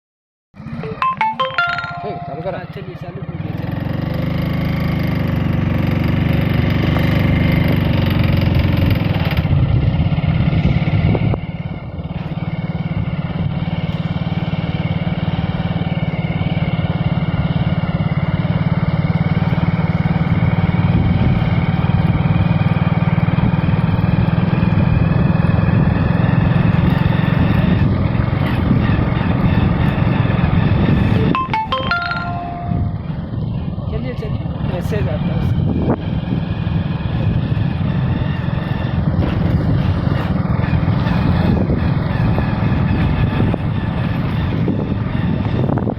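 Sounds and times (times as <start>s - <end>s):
vehicle engine running: 2.5s - 31.6s, 32.3s - 45.9s.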